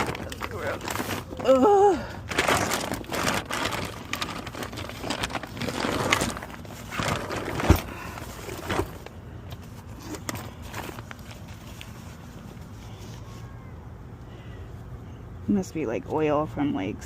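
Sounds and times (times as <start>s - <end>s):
scraping and rustling handling noises: 0.0s - 13.8s.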